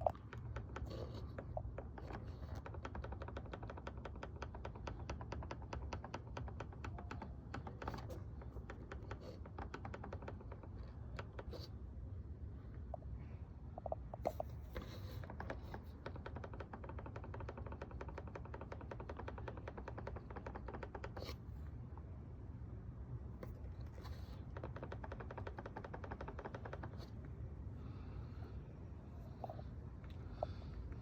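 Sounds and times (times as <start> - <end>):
rapid rattling clicks of car trim: 0.0 - 11.7, 14.8 - 21.6, 23.4 - 28.0.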